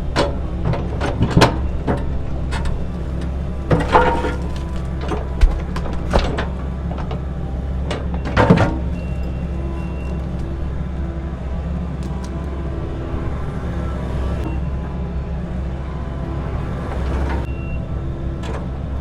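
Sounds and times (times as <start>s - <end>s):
excavator diesel engine running: 0.0s - 19.0s
concrete crunching: 0.5s - 12.7s.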